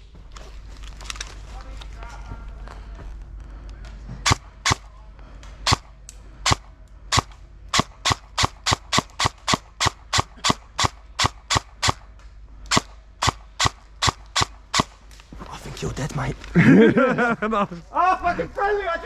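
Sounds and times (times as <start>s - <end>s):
airsoft gun shots: 4.2s - 4.9s, 5.6s - 12.1s, 12.7s - 15.0s.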